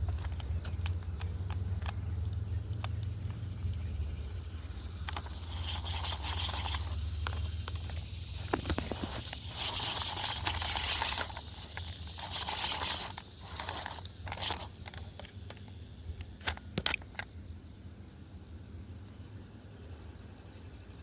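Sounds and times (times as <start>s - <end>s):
fishing reel gears whirring: 0.0s - 15.5s
fishing reel clicks: 4.7s - 15.6s.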